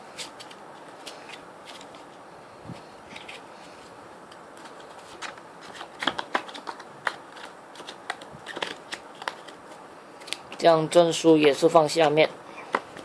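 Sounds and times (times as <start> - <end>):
plastic cards clicking and tapping: 4.6 - 9.6, 12.7 - 13.0.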